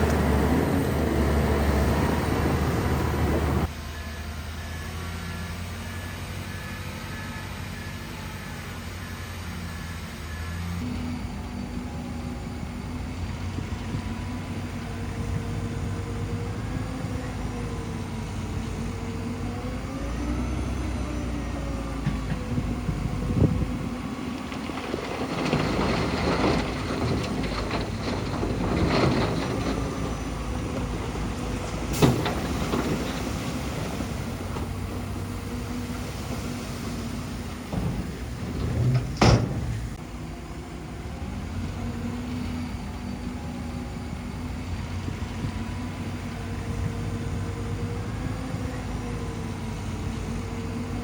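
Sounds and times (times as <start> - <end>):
bulldozer diesel engine: 0.0 - 51.0
rattling and clanking: 24.6 - 31.0, 37.7 - 40.0.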